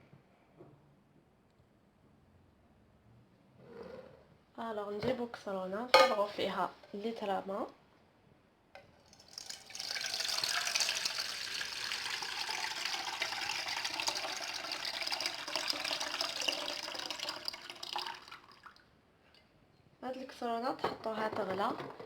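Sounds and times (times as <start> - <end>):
water pouring into a pot: 9.1 - 18.8.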